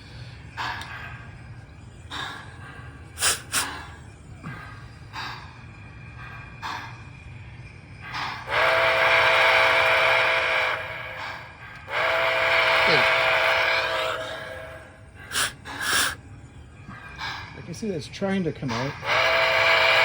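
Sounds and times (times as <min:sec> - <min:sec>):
model locomotive hissing and clicking: 0:02.1 - 0:03.9, 0:04.8 - 0:16.2, 0:17.0 - 0:20.0
chime steam whistle: 0:08.1 - 0:16.1, 0:19.0 - 0:20.0.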